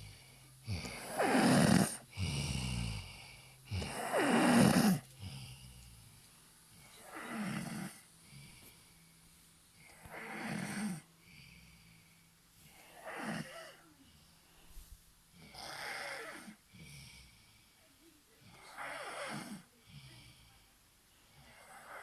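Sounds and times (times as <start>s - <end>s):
person snoring: 0.0s - 6.1s, 6.8s - 8.7s, 9.8s - 11.9s.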